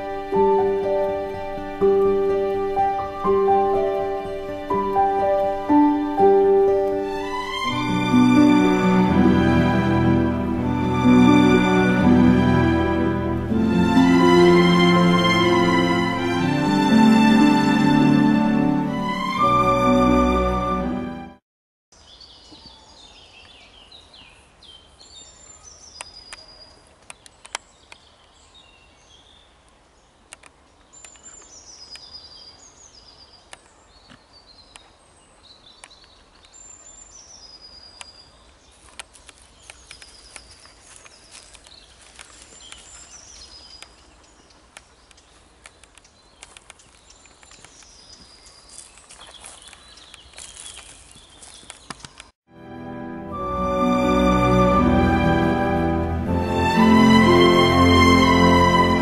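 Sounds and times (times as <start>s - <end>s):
background music: 0.0s - 21.4s, 52.5s - 59.0s.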